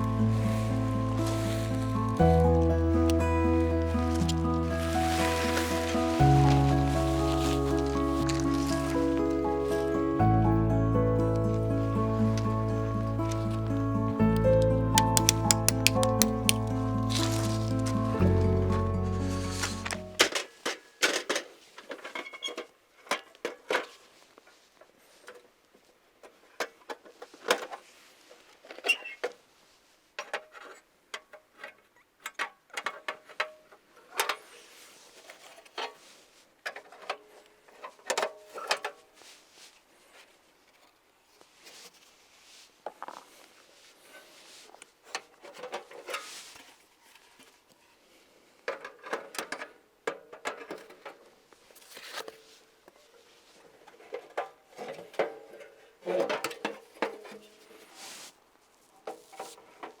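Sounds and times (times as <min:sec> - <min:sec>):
rustling: 0:00.0 - 0:10.2, 0:14.4 - 0:22.7, 0:34.2 - 0:48.4, 0:50.7 - 0:55.2, 0:56.1 - 1:00.0
objects clicking and clattering: 0:14.4 - 0:16.6.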